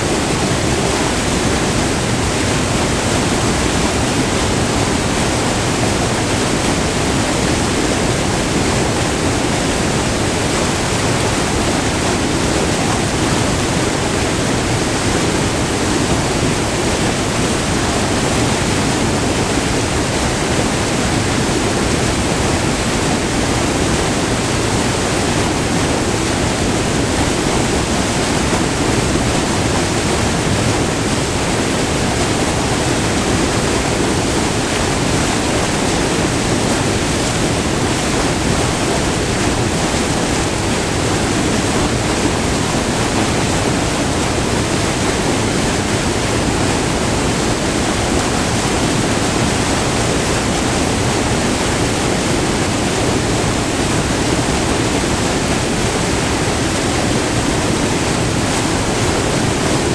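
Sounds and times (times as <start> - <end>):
waterfall roaring: 0.0 - 59.9.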